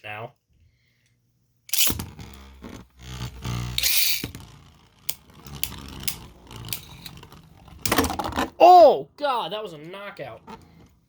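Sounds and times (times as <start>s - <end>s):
spinning tops grinding whir: 1.7s - 8.6s
spinning tops clashing: 3.5s - 8.4s.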